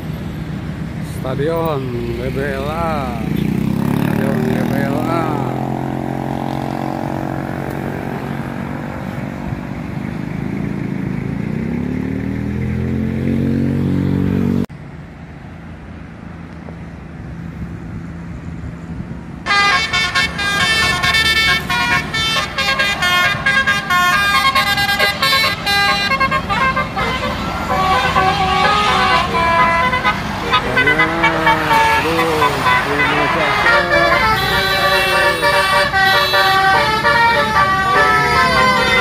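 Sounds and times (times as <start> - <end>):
quiet traffic: 0.0 - 39.0
vehicle engine speeding up: 1.9 - 14.7, 17.8 - 39.0
musical bus horn tune: 19.5 - 39.0.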